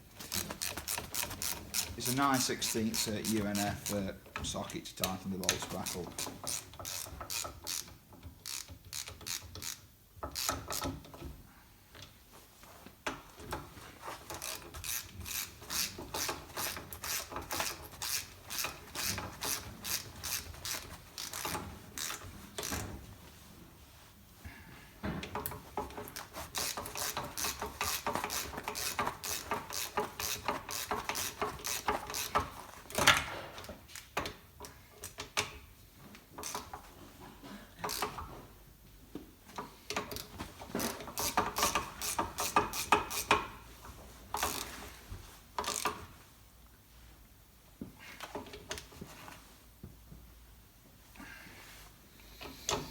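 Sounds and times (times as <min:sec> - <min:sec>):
socket ratchet clicking: 0:00.3 - 0:04.1, 0:05.5 - 0:11.1, 0:14.3 - 0:22.9, 0:25.4 - 0:33.2, 0:40.2 - 0:43.6.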